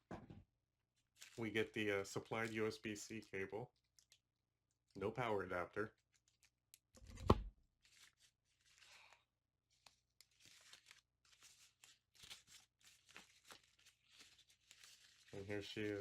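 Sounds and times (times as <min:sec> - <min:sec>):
wrapping crinkling and tearing: 0:01.0 - 0:04.2, 0:05.0 - 0:06.9, 0:07.7 - 0:16.0
package thump: 0:07.1 - 0:07.5.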